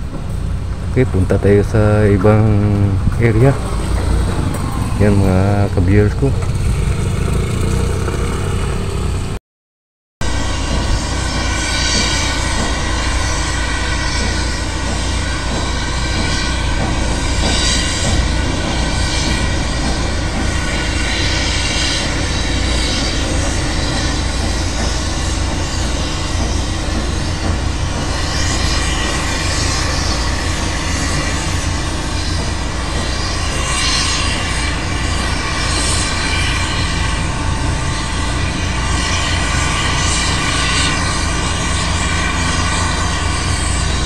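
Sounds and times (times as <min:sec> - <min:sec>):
vehicle engine and road noise: 0:00.0 - 0:09.4
wind rumble on microphone: 0:00.0 - 0:09.4.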